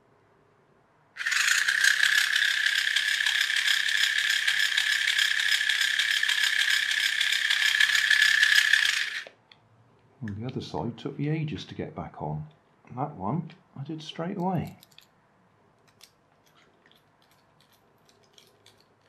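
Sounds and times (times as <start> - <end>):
gear train clicking rattle: 1.2 - 9.3
small electric motor whining: 1.2 - 9.3.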